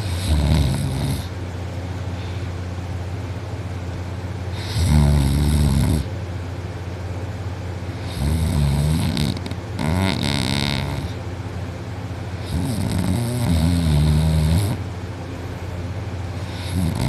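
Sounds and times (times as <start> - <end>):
person snoring: 0.0 - 1.3, 4.6 - 6.1, 8.0 - 11.2, 12.4 - 14.8, 16.4 - 17.0.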